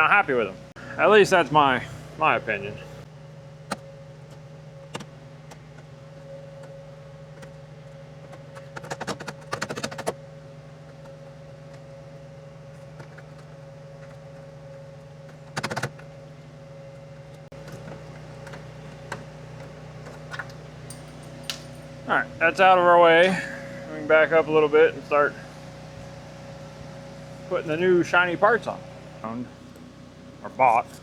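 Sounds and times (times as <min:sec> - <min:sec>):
steady low hum: 0:00.0 - 0:09.5, 0:10.1 - 0:31.0.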